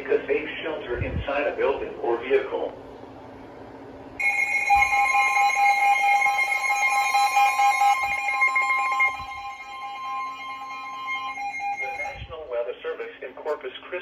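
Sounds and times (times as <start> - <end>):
steady electronic alert tone: 4.2 - 12.6.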